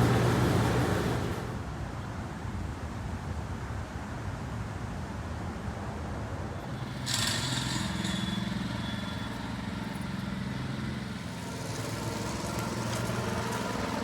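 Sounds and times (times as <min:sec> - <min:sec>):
small petrol engine running: 0:06.6 - 0:14.0.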